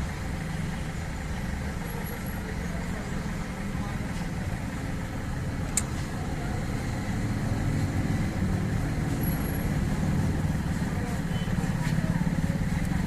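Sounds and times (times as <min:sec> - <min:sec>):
vehicle engine rumbling: 0:00.0 - 0:13.0
sharp click: 0:05.7 - 0:06.0.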